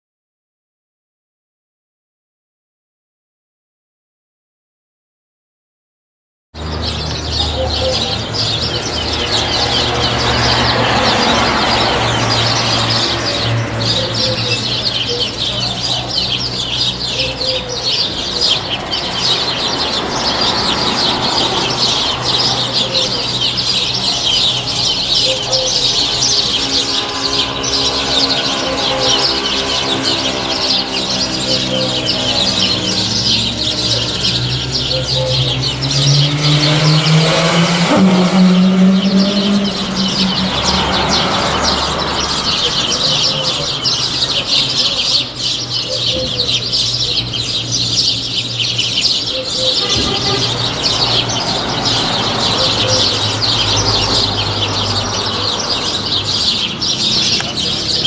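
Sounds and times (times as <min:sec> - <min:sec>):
small birds chirping: 0:06.6 - 0:58.0
engine pitch rising: 0:18.1 - 0:44.7.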